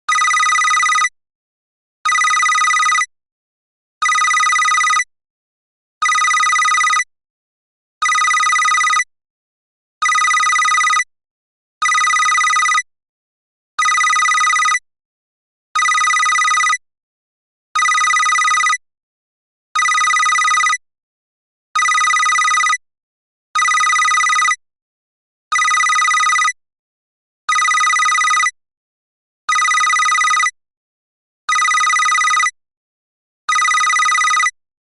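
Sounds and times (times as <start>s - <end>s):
telephone bell ringing: 0.1s - 1.1s, 2.1s - 3.0s, 4.0s - 5.0s, 6.0s - 7.0s, 8.0s - 9.0s, 10.0s - 11.0s, 11.8s - 12.8s, 13.8s - 14.8s, 15.8s - 16.8s, 17.8s - 18.8s, 19.8s - 20.8s, 21.8s - 22.8s, 23.6s - 24.6s, 25.6s - 26.6s, 27.5s - 28.5s, 29.5s - 30.5s, 31.5s - 32.5s, 33.5s - 34.5s.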